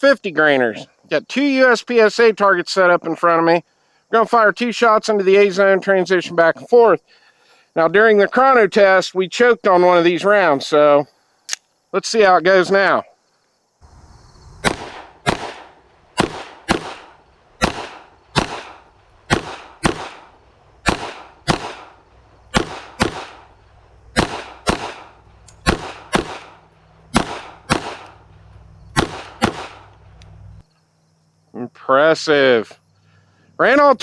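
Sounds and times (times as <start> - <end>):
pistol shots: 14.6 - 30.0.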